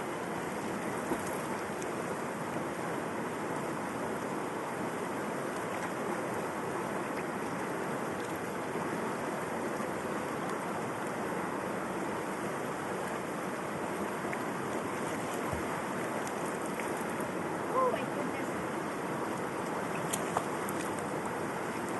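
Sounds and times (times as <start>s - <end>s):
river water flowing: 0.0s - 21.9s.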